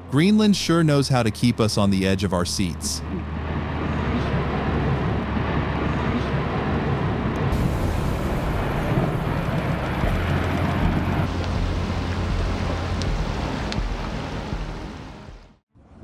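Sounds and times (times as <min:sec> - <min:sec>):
low engine-like hum: 0:00.0 - 0:15.0
water noise: 0:00.0 - 0:15.6
wind rushing: 0:03.2 - 0:14.8.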